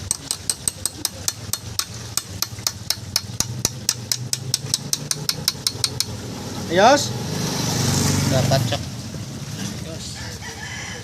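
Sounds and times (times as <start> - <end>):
hammer tapping on metal: 0.0 - 6.2.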